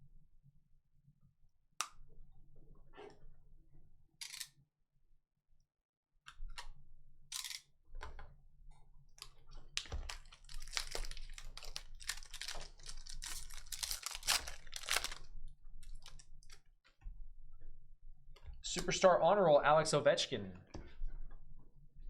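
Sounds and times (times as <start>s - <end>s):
cards clicking and snapping: 9.8s - 15.2s.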